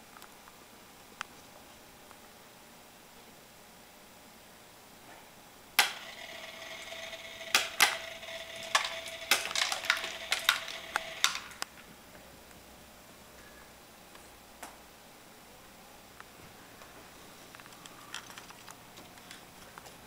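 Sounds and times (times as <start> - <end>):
small motor whining: 5.9 - 11.4
clicks and rattles: 7.6 - 11.7.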